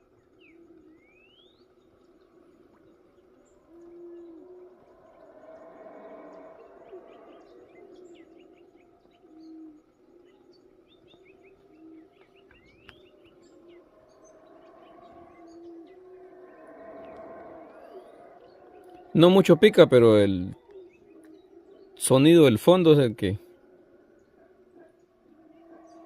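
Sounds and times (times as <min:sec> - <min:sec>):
birds chirping: 0:00.0 - 0:26.0
howler monkeys roaring: 0:03.4 - 0:10.6, 0:13.0 - 0:22.4, 0:23.4 - 0:26.0.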